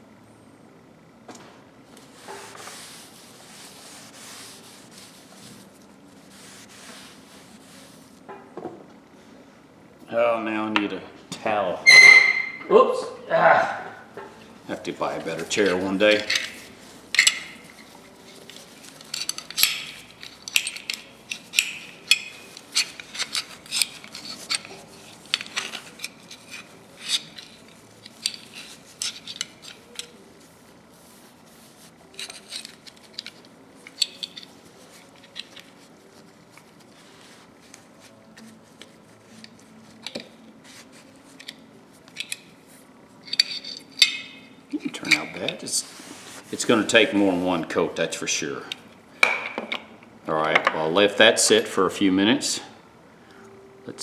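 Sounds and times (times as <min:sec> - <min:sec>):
quiet rubbing: 0:02.0 - 0:08.3, 0:44.8 - 0:47.7
metal clinks and taps: 0:43.2 - 0:44.5.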